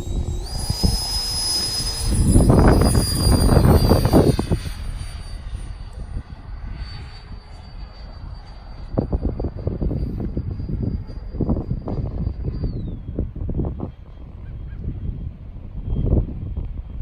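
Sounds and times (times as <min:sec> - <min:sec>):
loud low rushing noise: 0:00.0 - 0:06.8
electric ducted fan whine: 0:00.0 - 0:17.0.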